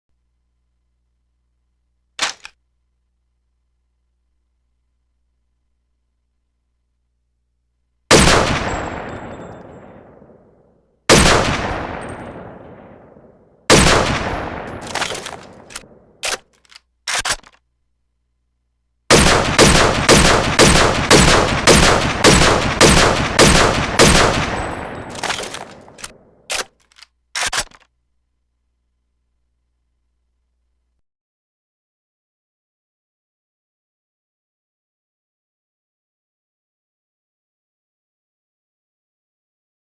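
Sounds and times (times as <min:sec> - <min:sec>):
rifle shots with echo: 0:02.2 - 0:02.5, 0:08.1 - 0:17.6, 0:19.1 - 0:27.8
short clicks: 0:02.2 - 0:02.6, 0:14.8 - 0:17.6, 0:25.1 - 0:27.9.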